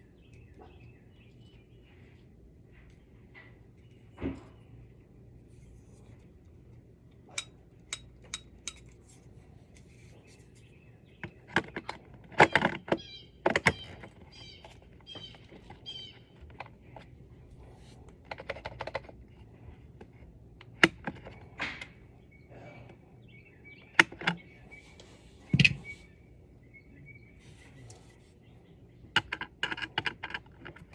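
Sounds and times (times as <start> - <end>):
birds chirping: 0.0 - 5.1, 8.4 - 18.0, 21.2 - 29.2.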